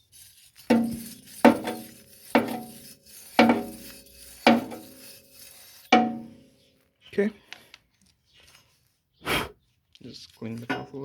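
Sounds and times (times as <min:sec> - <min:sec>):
metal clanking on metal: 0:00.6 - 0:06.4.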